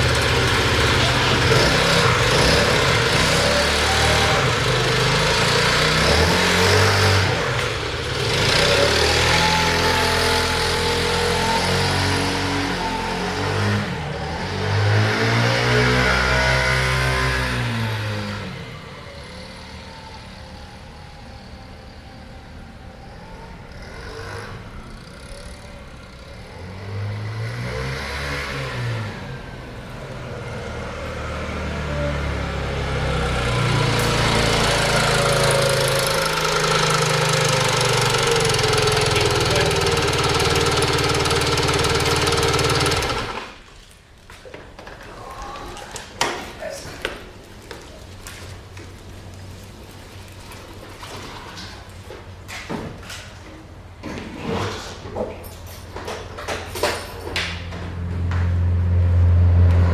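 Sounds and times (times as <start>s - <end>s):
scooter engine revving: 0.0s - 43.7s.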